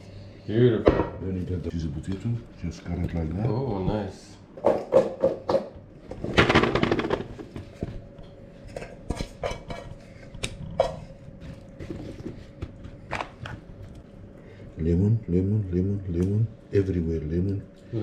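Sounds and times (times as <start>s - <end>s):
cookware and cutlery clinking: 8.7s - 10.0s.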